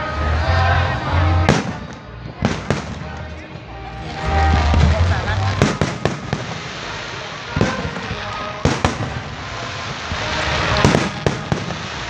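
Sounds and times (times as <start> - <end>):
fireworks bangs: 1.3 - 12.0
fireworks crackle: 1.3 - 12.0.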